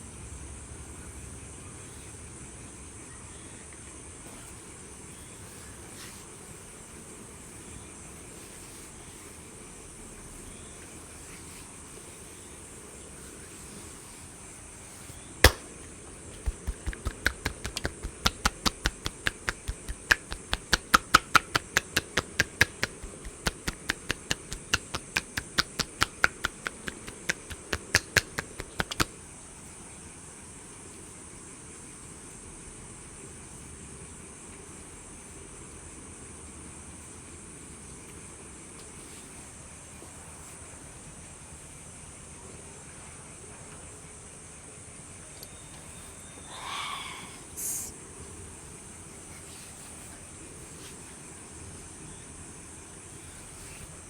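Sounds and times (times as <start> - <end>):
hands slapping body: 15.4 - 15.8, 16.4 - 29.2
sharp crack: 15.4 - 29.1.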